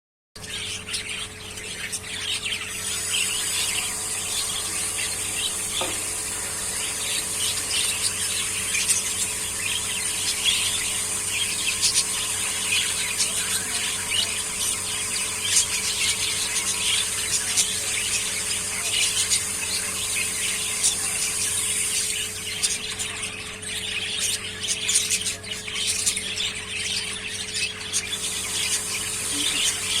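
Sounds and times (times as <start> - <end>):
parrots chirping and chattering: 0.4 - 30.0.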